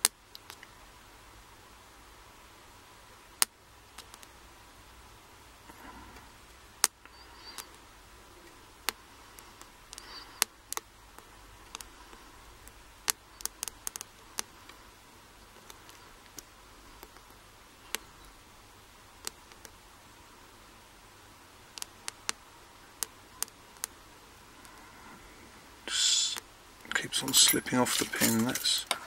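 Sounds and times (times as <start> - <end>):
faint metal scraping: 26.9 - 29.0.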